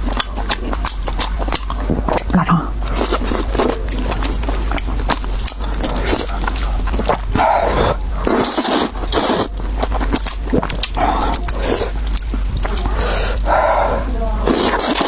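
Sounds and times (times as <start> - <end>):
wet chewing: 0.0 - 15.0
noodle slurping: 5.4 - 15.0.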